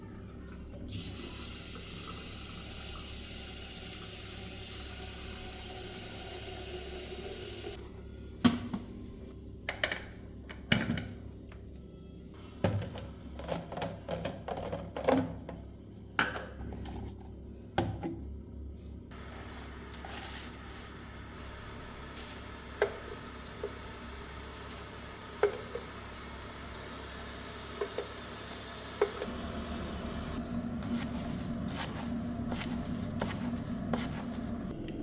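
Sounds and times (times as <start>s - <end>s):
water running from a tap: 0.9s - 7.8s, 21.1s - 30.4s.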